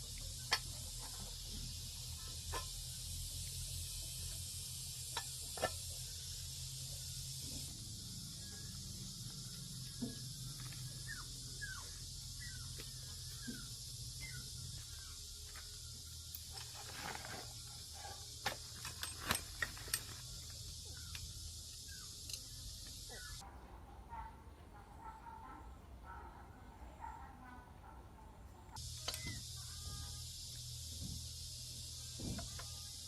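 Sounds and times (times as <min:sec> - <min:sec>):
parts clicking and tapping: 0:18.3 - 0:23.1.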